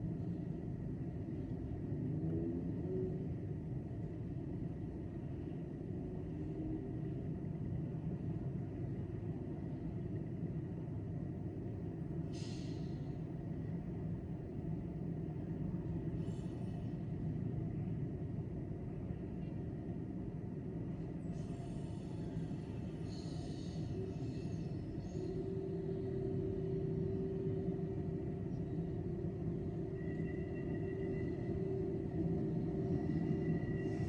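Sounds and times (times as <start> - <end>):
low rumble of train station: 0.0 - 34.0
steady hum: 22.2 - 34.0.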